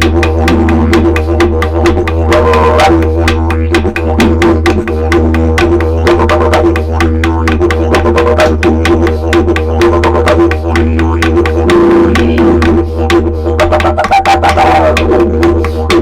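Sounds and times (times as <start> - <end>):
didgeridoo drone: 0.0 - 16.0.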